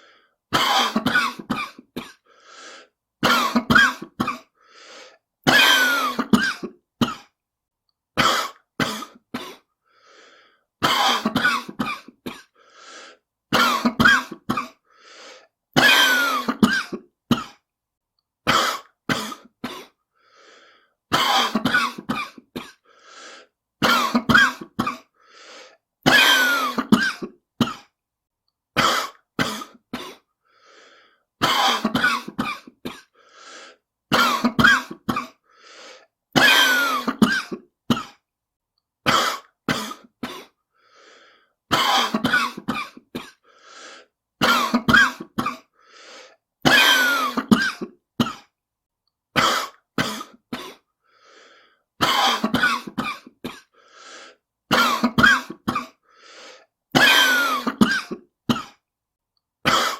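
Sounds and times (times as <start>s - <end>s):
faint breaths: 0.0s - 0.4s, 2.2s - 3.0s, 4.5s - 5.3s, 9.8s - 10.7s, 12.5s - 13.3s, 14.8s - 15.6s, 20.0s - 21.0s, 22.8s - 23.6s, 25.1s - 25.8s, 30.4s - 31.3s, 33.0s - 33.9s, 35.4s - 36.2s, 40.7s - 41.6s, 43.4s - 44.2s, 45.7s - 46.4s, 50.9s - 51.9s, 53.6s - 54.5s, 56.0s - 56.7s
person coughing: 0.5s - 2.3s, 3.2s - 4.6s, 5.4s - 7.4s, 8.2s - 9.7s, 10.8s - 12.6s, 13.5s - 14.8s, 15.8s - 17.6s, 18.4s - 20.0s, 21.1s - 22.9s, 23.8s - 25.2s, 26.0s - 28.0s, 28.8s - 30.3s, 31.4s - 33.2s, 34.1s - 35.4s, 36.4s - 38.2s, 39.0s - 40.6s, 41.7s - 43.5s, 44.4s - 45.8s, 46.6s - 48.5s, 49.4s - 50.9s, 52.0s - 53.8s, 54.7s - 56.0s, 57.0s - 58.8s, 59.6s - 59.9s.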